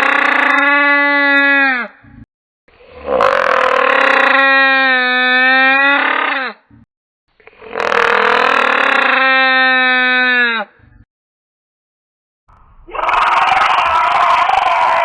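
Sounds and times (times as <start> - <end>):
dinosaur calls: 12.5 - 15.0.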